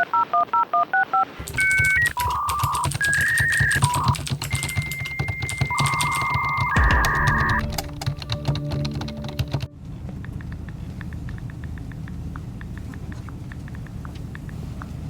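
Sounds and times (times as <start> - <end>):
rapid keyboard-like clicking: 1.4 - 15.0
held musical notes: 5.3 - 10.7
faint ticks: 10.1 - 15.0.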